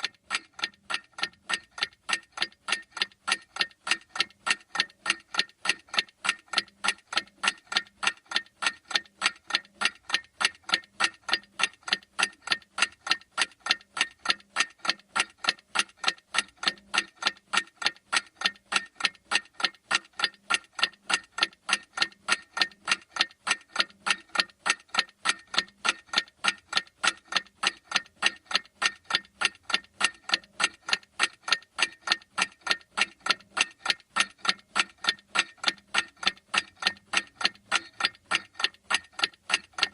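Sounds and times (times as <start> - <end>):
countdown timer ticking: 0.0 - 39.9.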